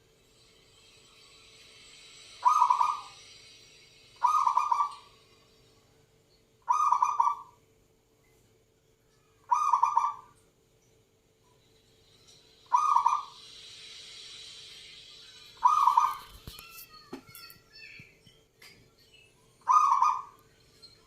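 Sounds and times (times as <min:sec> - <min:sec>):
dove cooing: 0:02.4 - 0:03.1, 0:04.2 - 0:05.1, 0:06.7 - 0:07.6, 0:09.5 - 0:10.3, 0:12.7 - 0:13.3, 0:15.6 - 0:16.3, 0:19.7 - 0:20.3.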